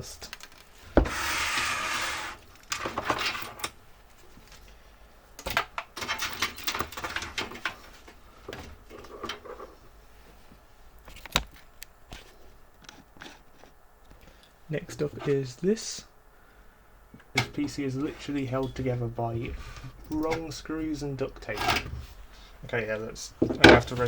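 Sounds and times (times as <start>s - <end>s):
computer parts clicking and rattling: 2.6s - 3.8s, 5.4s - 7.8s.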